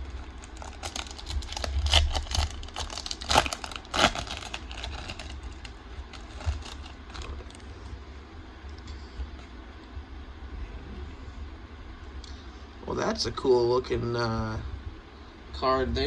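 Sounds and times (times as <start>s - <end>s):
foil pack crinkling and tearing: 0.0s - 7.7s.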